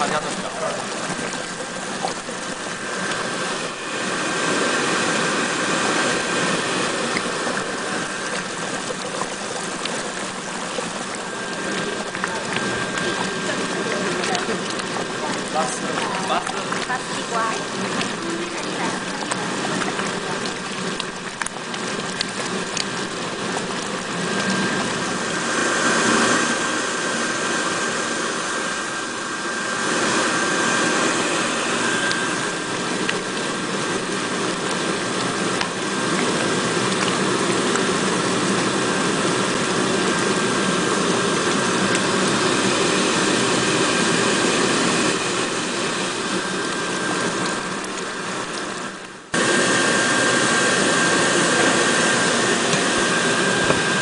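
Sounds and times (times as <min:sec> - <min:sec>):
induction cooker whirring: 0:00.0 - 0:54.0
thin high whine: 0:22.7 - 0:54.0.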